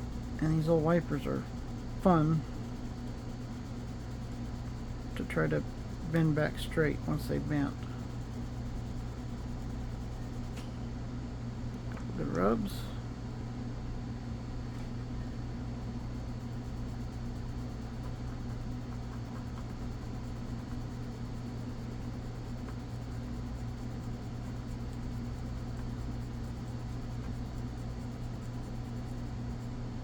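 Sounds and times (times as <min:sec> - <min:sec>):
steady low hum: 0:00.0 - 0:30.0.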